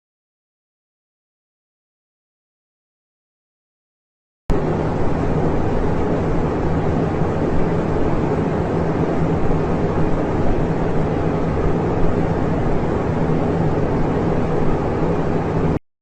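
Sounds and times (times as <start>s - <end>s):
loud engine-like rumble: 4.5s - 15.8s.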